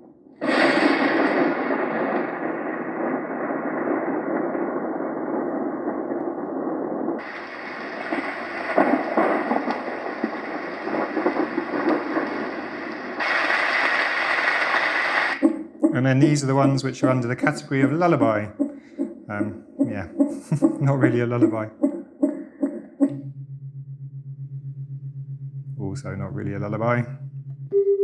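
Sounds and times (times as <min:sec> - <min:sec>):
bright hiss with cracks: 0:07.2 - 0:15.4
rain-like hiss from small speaker: 0:07.2 - 0:15.4.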